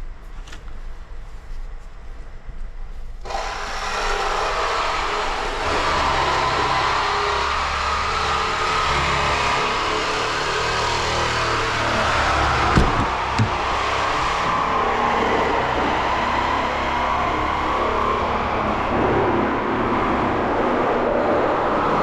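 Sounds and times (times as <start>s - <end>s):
sharp knocks: 12.7s - 14.4s.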